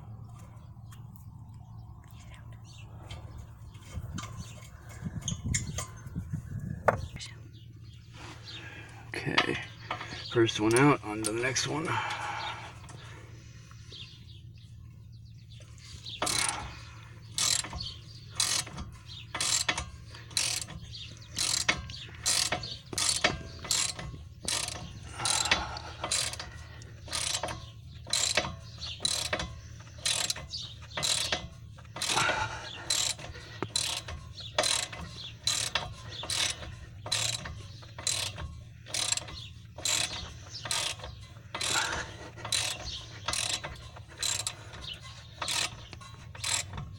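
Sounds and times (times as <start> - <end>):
ratchet wrench clicking: 16.2 - 46.9.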